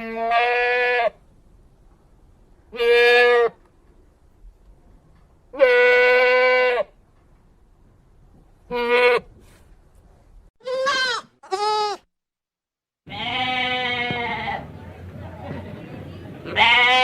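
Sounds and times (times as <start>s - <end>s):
goat bleating: 0.0s - 1.2s, 2.7s - 3.6s, 5.5s - 6.9s, 8.7s - 9.3s, 10.6s - 12.1s, 13.1s - 14.7s, 16.5s - 17.0s.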